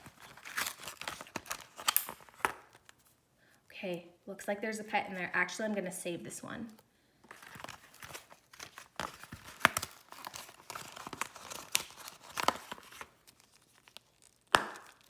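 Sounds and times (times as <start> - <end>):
toy packaging crinkling and popping: 0.0 - 3.2, 6.7 - 15.0.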